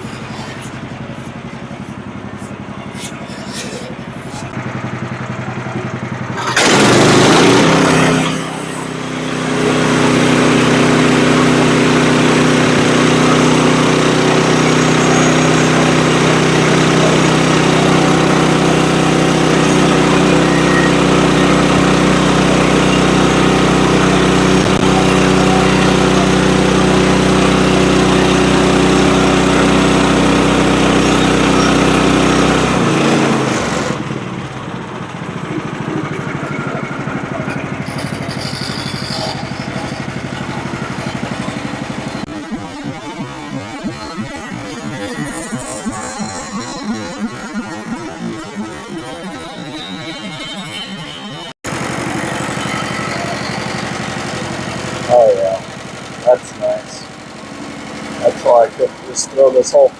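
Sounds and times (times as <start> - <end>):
saw blade cutting through log: 0.0 - 4.6, 6.6 - 34.2, 35.9 - 54.4
sawmill gas engine running: 0.0 - 59.9.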